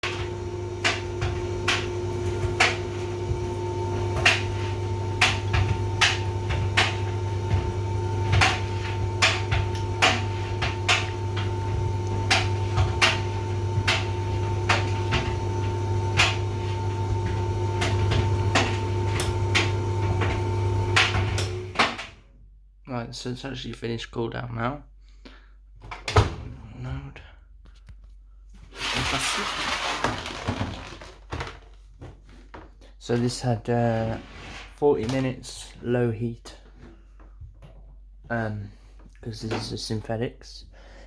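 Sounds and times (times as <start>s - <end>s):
tumble dryer motor hum: 0.0s - 22.2s.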